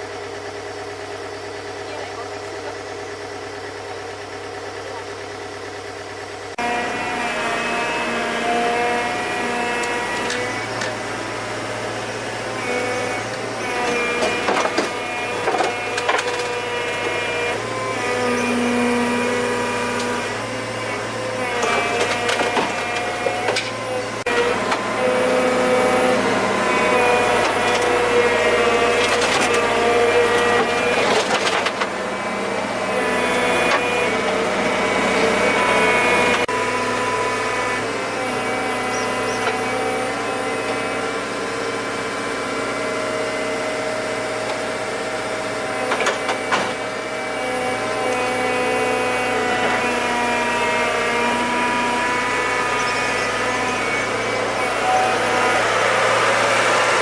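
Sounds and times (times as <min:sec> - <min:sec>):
engine running: 0:00.0 - 0:57.0
wood cracking and splintering: 0:28.8 - 0:29.7, 0:30.4 - 0:32.0.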